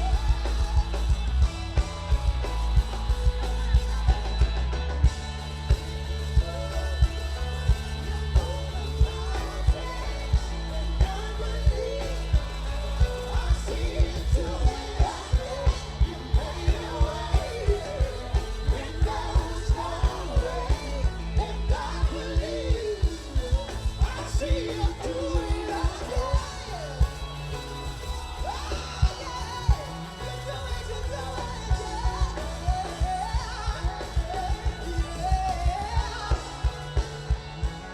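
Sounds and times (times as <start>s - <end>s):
live gospel band music: 0.0s - 37.9s
person singing: 0.0s - 37.9s.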